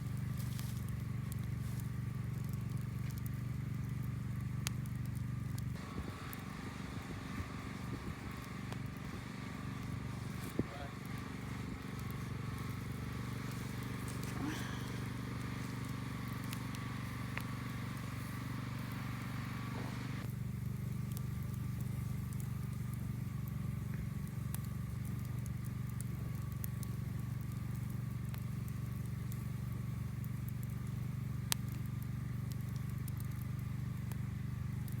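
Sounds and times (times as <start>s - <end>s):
low rumble: 0.0s - 20.8s
campfire crackling: 0.0s - 35.0s
fire popping: 0.0s - 35.0s.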